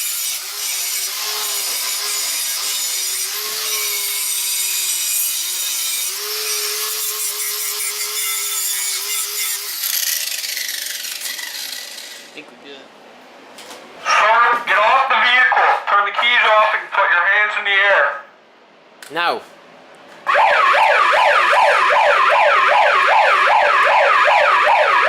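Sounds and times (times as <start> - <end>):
angle grinder grinding steel: 0.0 - 12.4.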